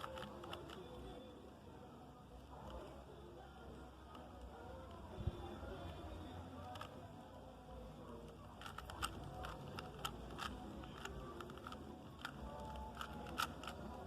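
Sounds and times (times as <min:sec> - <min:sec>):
puzzle cube plastic clicks: 0:00.0 - 0:01.1, 0:06.6 - 0:07.0, 0:08.2 - 0:14.0.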